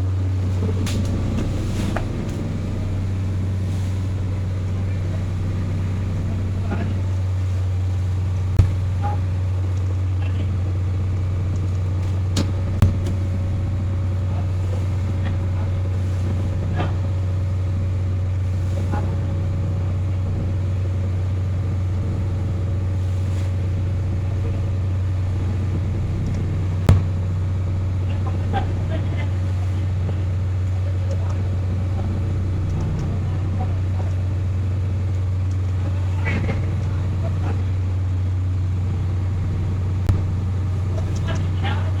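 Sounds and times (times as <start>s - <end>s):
motor humming: 0.0s - 42.0s
sharp knocks: 26.9s - 27.2s.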